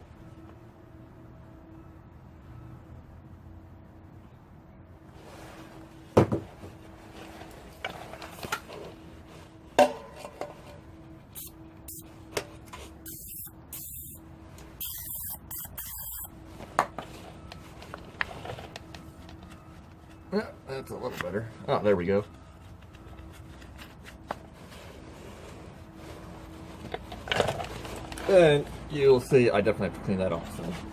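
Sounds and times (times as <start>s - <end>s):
hissing noise: 11.4s - 12.0s, 13.0s - 14.2s, 14.8s - 16.3s.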